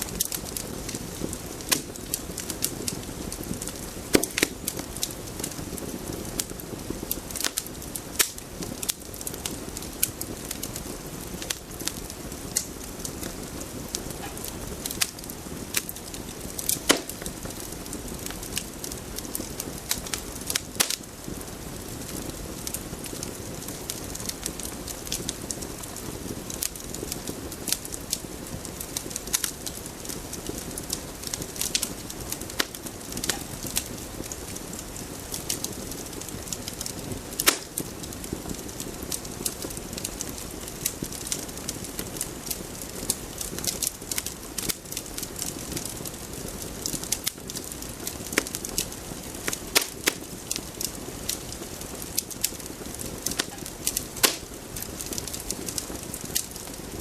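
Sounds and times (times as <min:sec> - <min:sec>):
crackling and popping: 0:00.0 - 0:57.0
steady hiss: 0:00.0 - 0:57.0.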